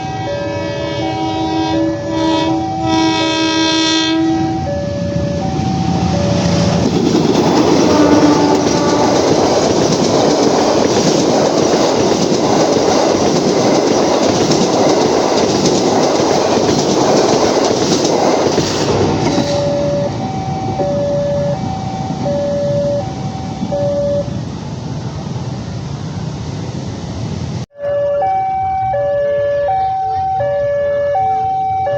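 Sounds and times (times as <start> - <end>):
locomotive multi-chime horn: 0.0 - 6.7, 7.7 - 9.6, 19.5 - 24.3
wheels clattering over rail joints: 5.6 - 20.9
two-note warning chime: 27.7 - 31.9.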